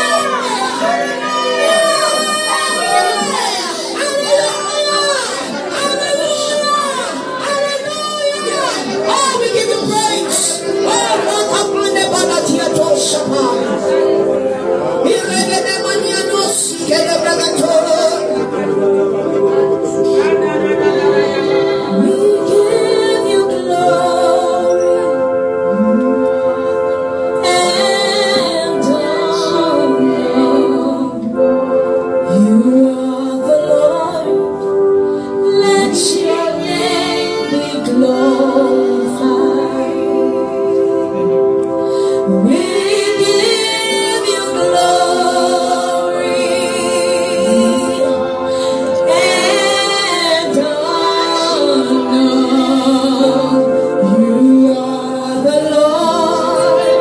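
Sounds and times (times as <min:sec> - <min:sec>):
held chords: 0:00.0 - 0:04.3, 0:54.1 - 0:57.0
women singing gospel: 0:00.0 - 0:14.3, 0:15.0 - 0:25.1, 0:27.4 - 0:31.4, 0:32.3 - 0:57.0.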